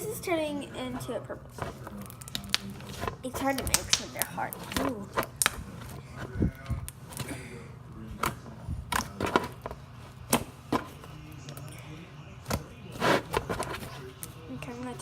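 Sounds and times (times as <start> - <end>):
slime kneaded with clicks and pops: 2.0 - 5.6.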